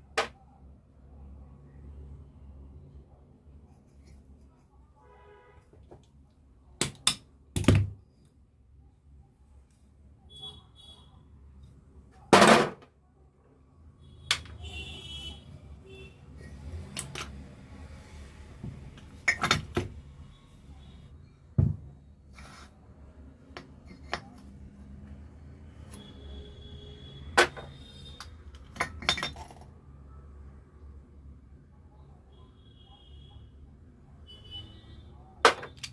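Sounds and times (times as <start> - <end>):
metal parts and tools clinking: 27.4 - 29.7.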